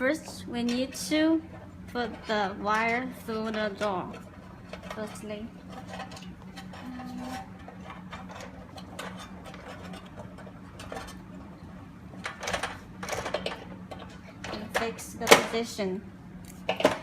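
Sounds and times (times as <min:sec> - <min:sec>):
steady low hum: 0:00.0 - 0:17.0
clicks and scrapes of handling: 0:02.7 - 0:11.6.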